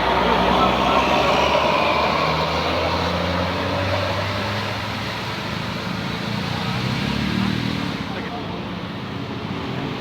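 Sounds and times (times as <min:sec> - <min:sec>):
large vehicle engine running: 0:00.0 - 0:05.9
road and traffic noise: 0:00.0 - 0:10.0.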